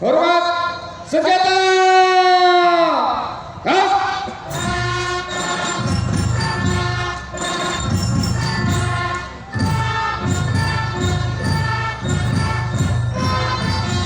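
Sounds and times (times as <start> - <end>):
ceremonial band music: 4.4 - 14.0
steady drum beat: 4.4 - 14.0.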